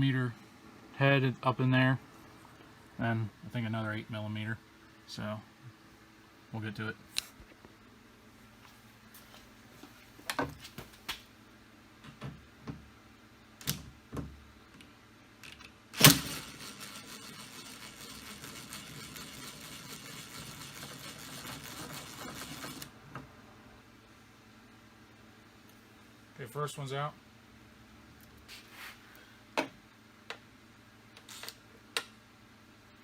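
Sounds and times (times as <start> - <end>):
cordless drill running: 16.0 - 22.9.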